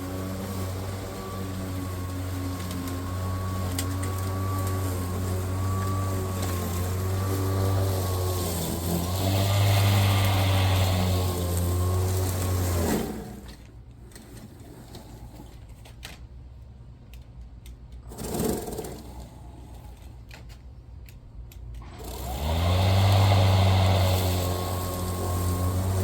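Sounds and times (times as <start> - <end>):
electric lawnmower motor humming: 0.0 - 13.6, 21.8 - 26.0.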